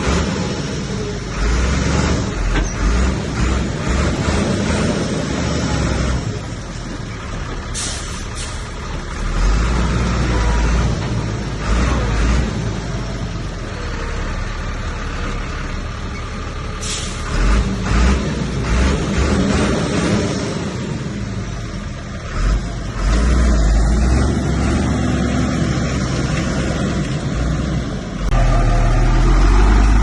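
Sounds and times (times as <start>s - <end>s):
heavy diesel machinery rumbling: 0.0s - 30.0s
air brake hisses: 7.7s - 8.7s, 16.8s - 17.3s.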